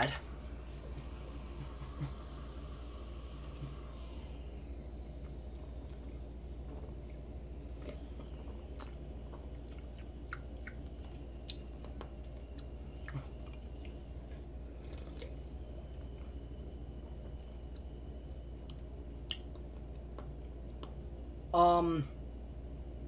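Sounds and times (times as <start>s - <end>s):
low hum: 0.0s - 23.0s
mouth clicks and smacks: 9.6s - 14.0s.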